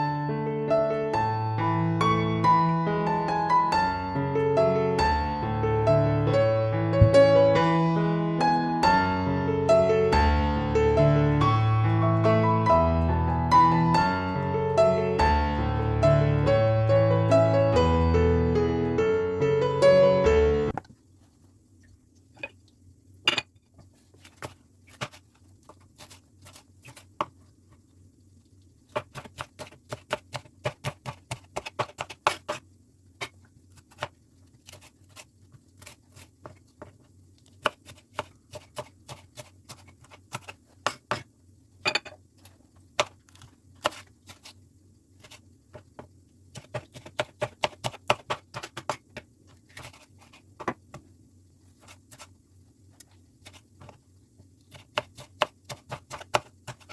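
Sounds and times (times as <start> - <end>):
knife chopping on cutting board: 28.9 - 32.6, 37.6 - 41.3, 46.0 - 50.0, 54.7 - 56.9.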